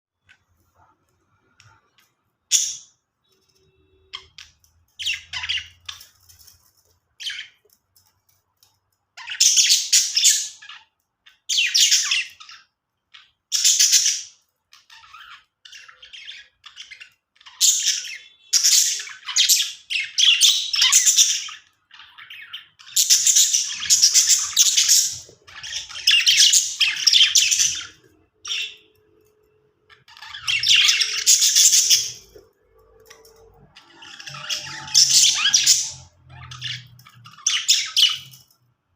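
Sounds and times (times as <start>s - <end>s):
budgerigars chattering and squawking: 4.1s - 6.5s, 9.2s - 29.0s, 29.9s - 38.5s.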